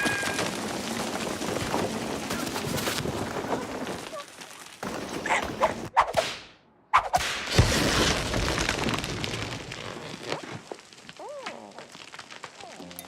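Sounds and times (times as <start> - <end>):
whip-like crack: 5.9 - 7.6.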